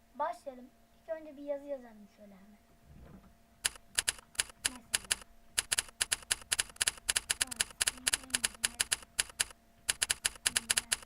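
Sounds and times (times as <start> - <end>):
keyboard typing clicks: 3.6 - 11.0.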